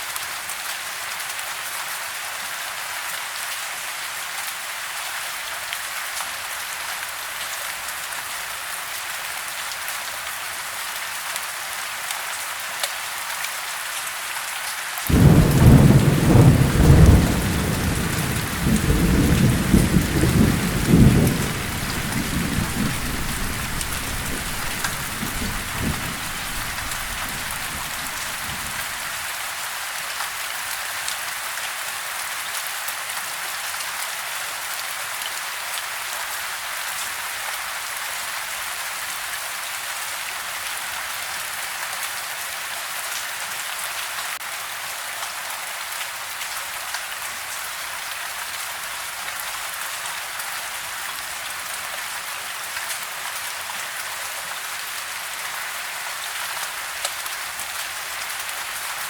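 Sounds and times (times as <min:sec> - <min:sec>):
steady rain falling: 0:00.0 - 0:59.0
thunderclap rumbling: 0:15.1 - 0:29.0.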